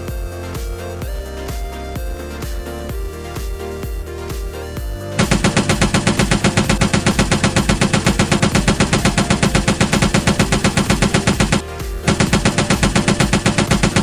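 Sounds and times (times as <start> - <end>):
toy machine gun firing: 5.2 - 14.0.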